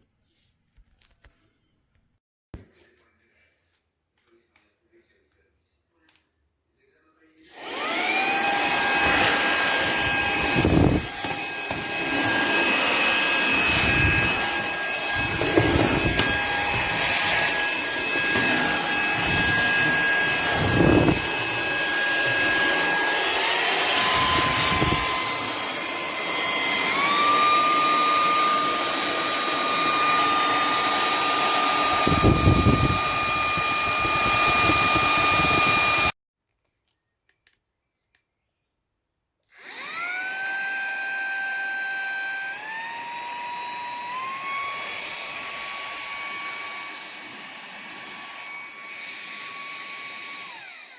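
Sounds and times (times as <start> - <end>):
handheld vacuum cleaner whining: 7.4 - 36.2, 39.5 - 50.9.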